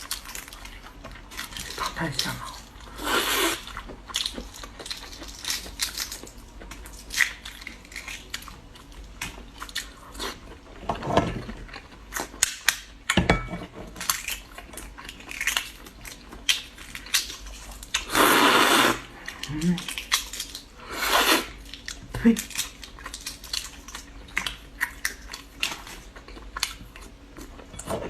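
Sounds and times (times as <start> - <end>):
chewing and biting food: 0.0 - 10.8, 14.0 - 18.2, 21.5 - 28.0.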